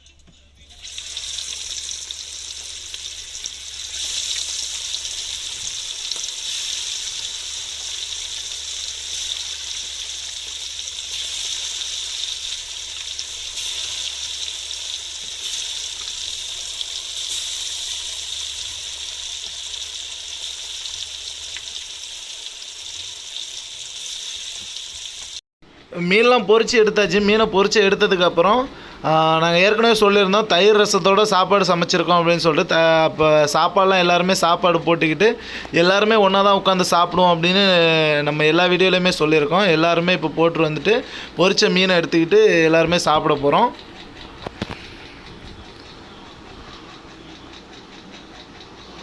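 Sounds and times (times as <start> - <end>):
fish sizzling in hot oil: 0.7 - 25.4.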